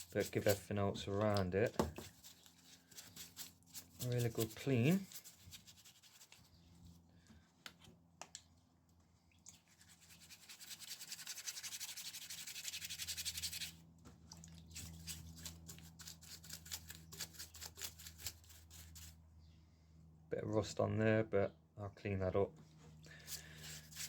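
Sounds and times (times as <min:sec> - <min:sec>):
brush scrubbing: 0:00.0 - 0:06.6, 0:09.5 - 0:13.8, 0:14.6 - 0:19.1, 0:23.2 - 0:24.0.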